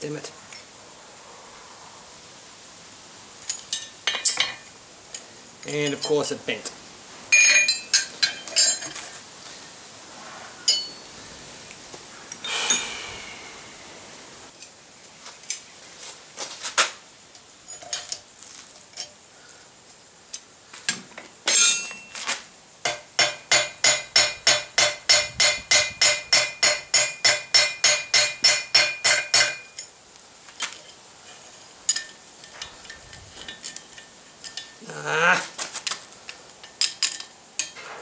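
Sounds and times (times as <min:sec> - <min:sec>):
metal knocks and clinks: 0:07.3 - 0:09.0, 0:10.7 - 0:11.1, 0:21.5 - 0:22.3, 0:22.9 - 0:29.9, 0:30.6 - 0:34.8, 0:36.6 - 0:37.9
hammer striking steel: 0:21.5 - 0:22.1, 0:22.9 - 0:29.8.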